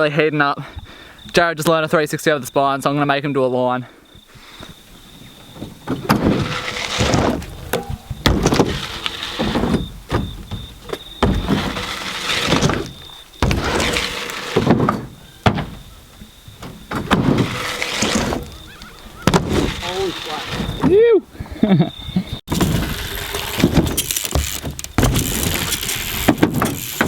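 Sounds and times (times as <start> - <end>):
bike tyres rolling on wood: 4.4 - 21.1, 22.0 - 27.0
bike landing thuds on ramps: 5.5 - 18.6, 19.2 - 21.0, 22.5 - 27.0.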